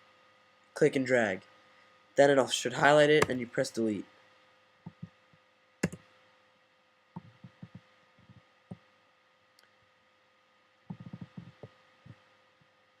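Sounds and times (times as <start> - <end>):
steady electrical hum: 0.0 - 13.0
keyboard and mouse clicks: 4.9 - 5.1, 5.8 - 6.0, 7.2 - 8.4, 10.9 - 11.7.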